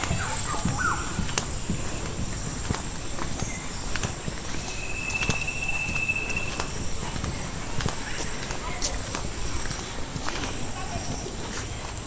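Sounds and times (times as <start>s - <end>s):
footsteps on dirt path: 0.0s - 12.0s
thin high insect or bird tone: 3.2s - 8.4s.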